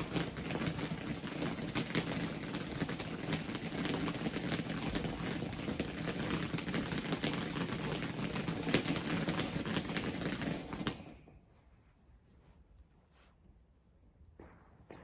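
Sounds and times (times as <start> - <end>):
firework fizzing hiss: 0.0 - 11.2
firework crackling pops: 0.0 - 11.4.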